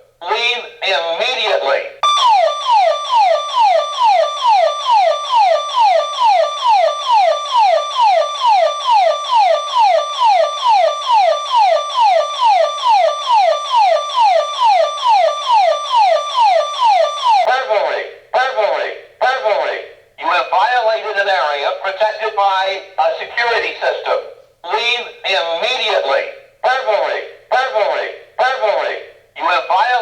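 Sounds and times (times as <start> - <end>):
burglar alarm siren sweeping: 2.0 - 17.5.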